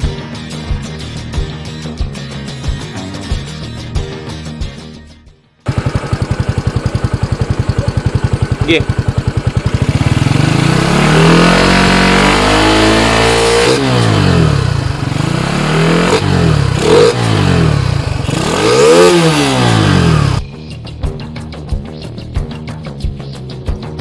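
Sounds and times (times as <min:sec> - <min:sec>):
music with a beat: 0:00.0 - 0:05.6, 0:20.4 - 0:24.0
motorcycle engine revving: 0:05.7 - 0:20.4.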